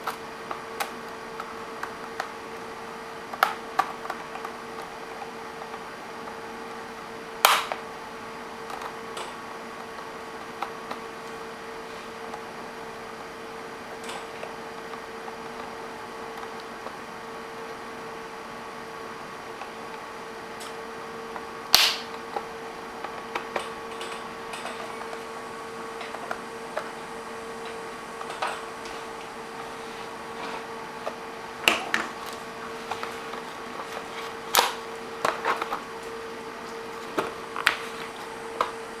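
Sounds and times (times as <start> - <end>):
steady hum: 15.0 - 39.0.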